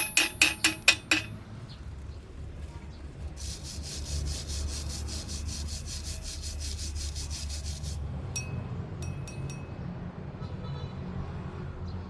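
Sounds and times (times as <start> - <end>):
hand tool scraping metal: 0.0 - 1.4, 3.4 - 8.0.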